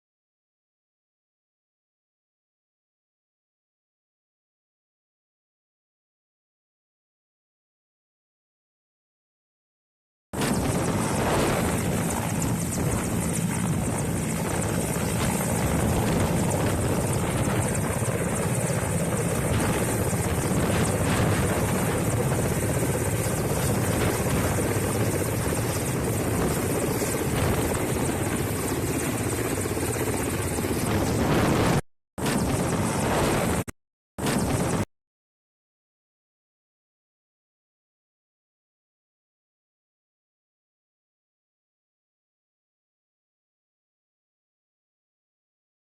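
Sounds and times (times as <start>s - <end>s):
helicopter flying: 10.4s - 34.9s.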